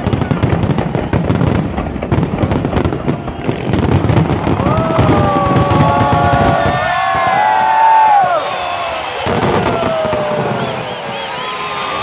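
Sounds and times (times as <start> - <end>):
fireworks crackling bangs: 0.0 - 12.0.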